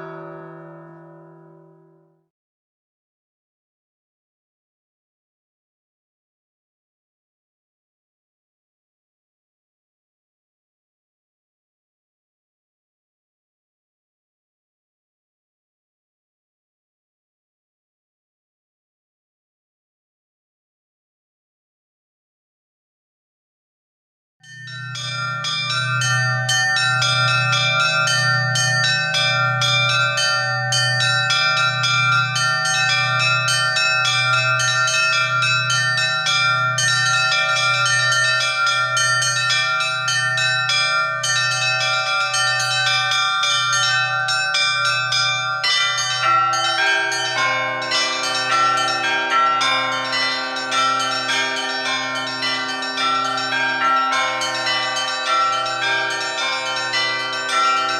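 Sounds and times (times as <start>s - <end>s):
middle bells ringing: 0.0s - 1.9s, 24.4s - 57.9s
large low bell strikes: 0.0s - 2.2s
small treble bells ringing: 24.4s - 57.9s.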